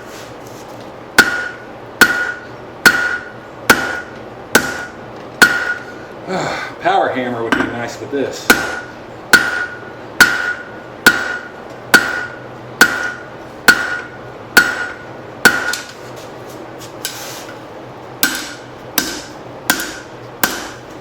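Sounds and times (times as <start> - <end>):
hammer striking hot steel on anvil: 1.2 - 5.9, 8.5 - 16.0, 18.2 - 20.8.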